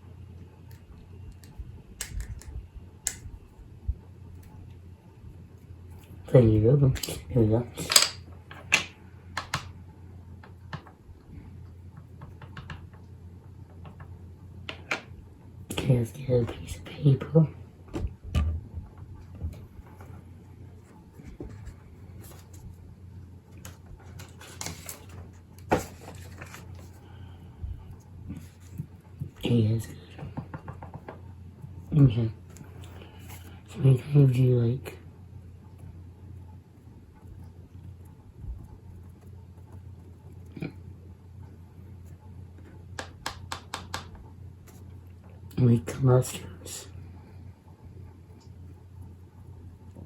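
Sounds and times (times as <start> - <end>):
steady low hum: 0.0 - 50.0
ink pad tapping on paper: 43.0 - 44.2.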